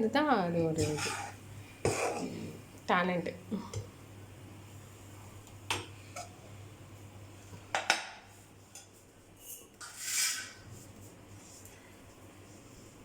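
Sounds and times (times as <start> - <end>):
rasping scraping noise: 9.8 - 10.6.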